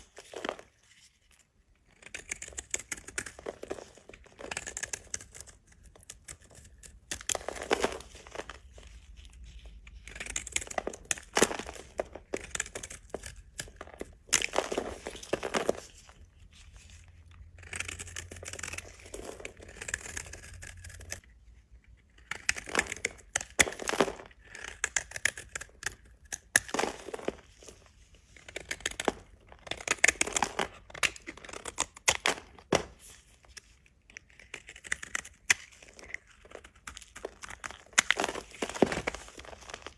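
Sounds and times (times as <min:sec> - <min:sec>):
knife scraping through soap: 0:00.5 - 0:27.5, 0:34.1 - 0:39.8.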